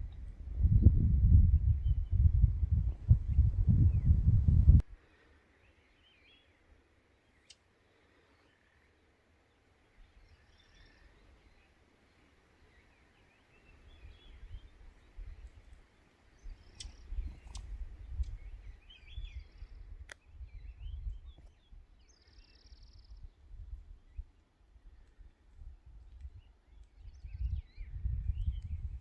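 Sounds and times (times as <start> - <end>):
low rumble: 0.0 - 4.9
small birds chirping: 5.5 - 29.0.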